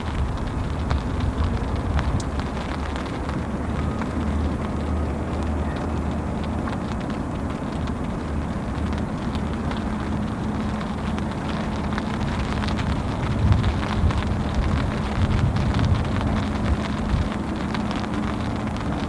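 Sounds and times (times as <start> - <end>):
drops ticking on microphone: 0.0 - 19.0
heavy rain falling: 0.0 - 19.0.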